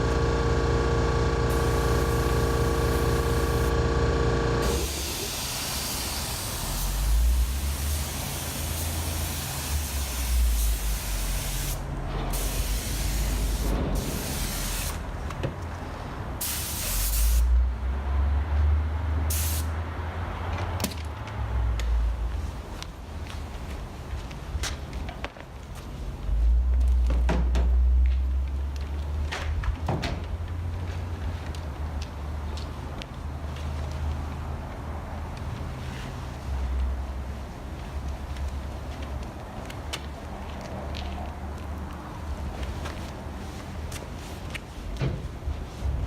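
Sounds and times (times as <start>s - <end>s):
steady machine hum: 0.0s - 5.2s
paint spray gun hissing: 0.0s - 11.8s, 12.4s - 15.0s, 16.4s - 17.4s.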